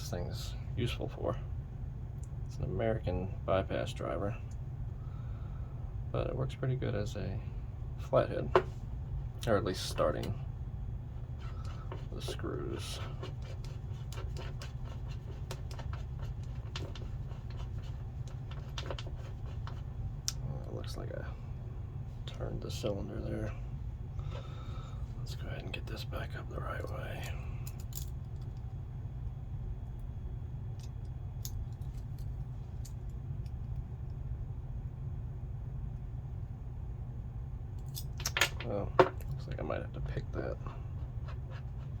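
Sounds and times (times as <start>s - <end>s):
steady low hum: 0.0s - 42.0s
faint metallic clicks of lock tools: 26.8s - 28.7s.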